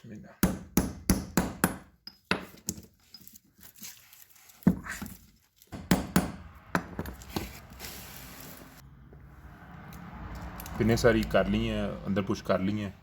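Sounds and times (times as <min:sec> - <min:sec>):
hammer striking metal casing: 0:05.8 - 0:07.1.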